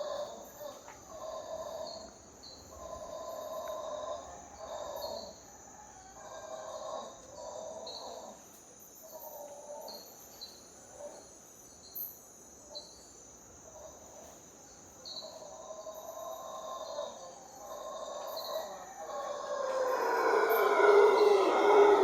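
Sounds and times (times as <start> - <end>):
high insect drone: 11.5 - 22.0
howler monkeys howling: 16.3 - 22.0.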